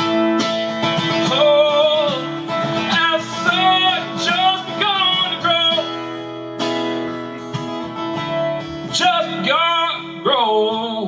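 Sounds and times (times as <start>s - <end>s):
acoustic guitar: 0.0s - 11.0s
man singing: 1.0s - 6.2s, 8.8s - 11.0s.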